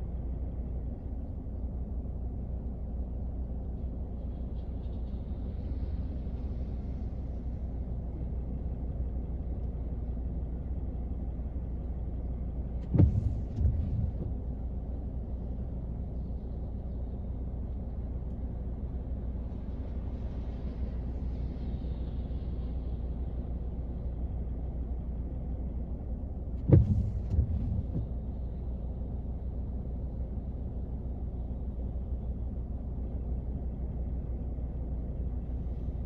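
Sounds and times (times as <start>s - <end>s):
rain on a car: 0.0s - 36.0s
sharp thump: 12.8s - 14.4s, 26.6s - 28.2s.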